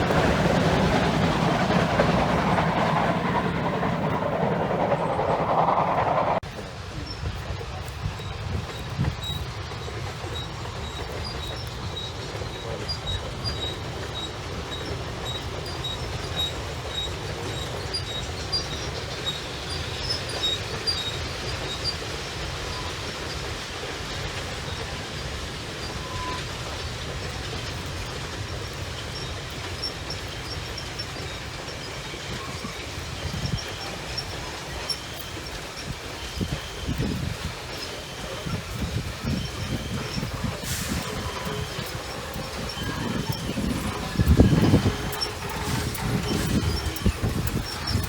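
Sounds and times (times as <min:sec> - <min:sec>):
train wheels rumbling on rail: 0:00.0 - 0:48.0.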